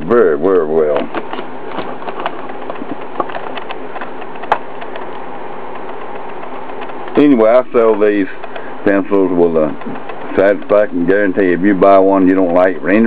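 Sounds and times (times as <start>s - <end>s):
background hum and hiss: 0.0s - 13.0s
faint small clicks and taps: 0.9s - 10.9s.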